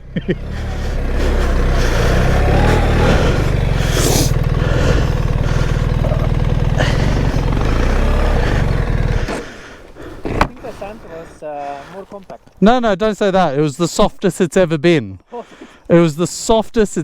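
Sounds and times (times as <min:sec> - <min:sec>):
motorcycle engine at low revs: 0:00.0 - 0:11.4.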